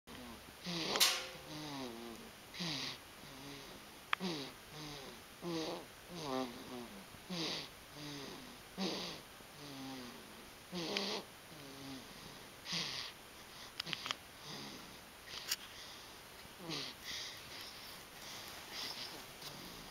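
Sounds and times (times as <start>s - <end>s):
rhythmic whistling snoring: 0.2s - 13.1s, 18.7s - 19.9s.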